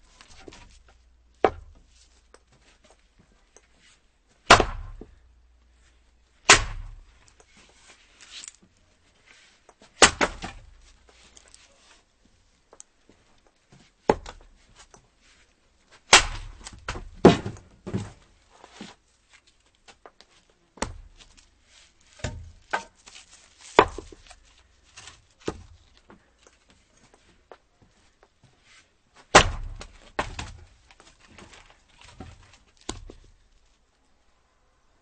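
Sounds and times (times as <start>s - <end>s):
axe chopping firewood: 1.4s - 1.8s, 4.4s - 5.2s, 6.4s - 7.1s, 10.0s - 10.9s, 14.0s - 14.5s, 16.1s - 18.2s, 20.8s - 21.4s, 22.1s - 25.9s, 29.3s - 33.4s
wood knocks and clatters: 16.2s - 19.0s, 22.1s - 27.6s, 29.3s - 33.5s.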